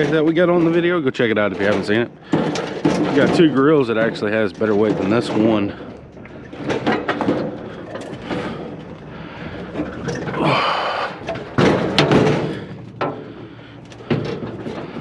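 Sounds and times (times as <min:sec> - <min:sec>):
metal grill knocks and bangs: 0:00.0 - 0:05.7, 0:11.3 - 0:13.4
scraping rattle: 0:00.0 - 0:15.0.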